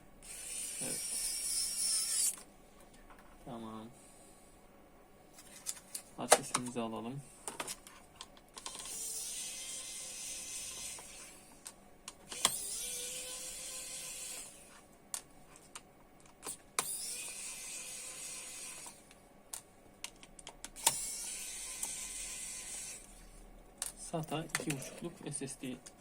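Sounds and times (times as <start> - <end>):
small motorised tool running: 0.2 - 2.4, 8.6 - 11.5, 12.3 - 14.7, 16.8 - 19.0, 20.8 - 23.1.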